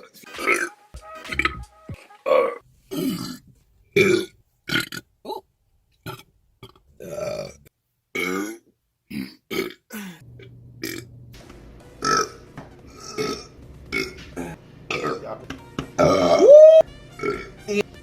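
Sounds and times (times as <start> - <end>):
woman burping: 8.2 - 11.1, 12.0 - 15.2, 16.0 - 16.6.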